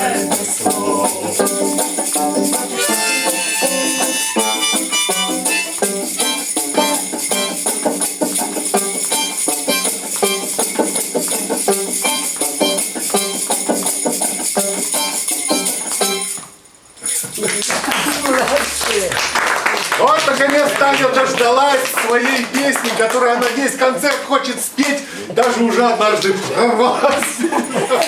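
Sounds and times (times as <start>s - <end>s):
shaker rattle: 0.0s - 18.8s
acoustic instrumental music: 0.0s - 26.6s.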